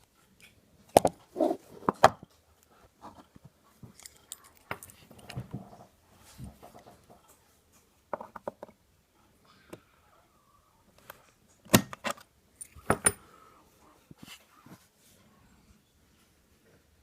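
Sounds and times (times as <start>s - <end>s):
metallic clicks of small parts: 3.9s - 5.4s.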